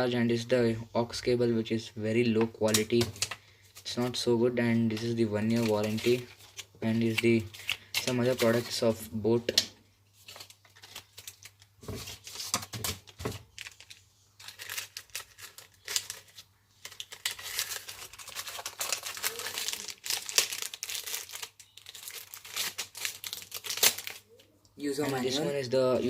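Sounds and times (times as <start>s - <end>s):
paper and plastic crinkling: 4.8s - 9.0s, 10.1s - 24.4s.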